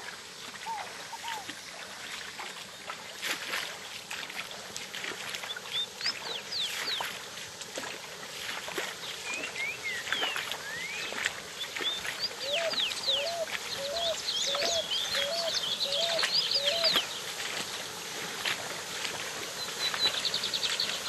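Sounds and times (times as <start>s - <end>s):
small waterfall splashing: 0.0s - 21.0s
birds chirping: 0.6s - 1.6s, 5.4s - 7.1s, 9.0s - 17.8s, 19.5s - 21.0s.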